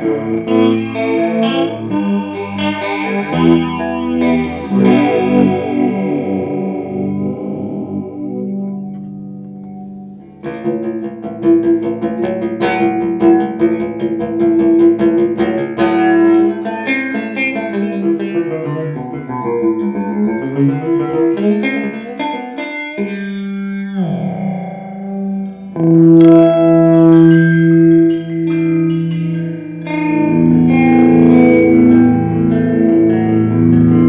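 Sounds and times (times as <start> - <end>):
electric guitar with chorus effect: 0.0 - 34.0.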